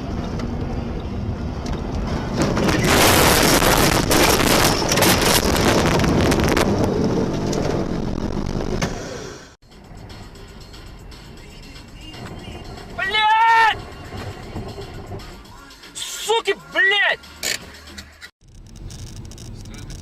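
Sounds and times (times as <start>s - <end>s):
car engine and road rumble: 0.0s - 20.0s
loud rushing crackling noise: 2.0s - 8.8s.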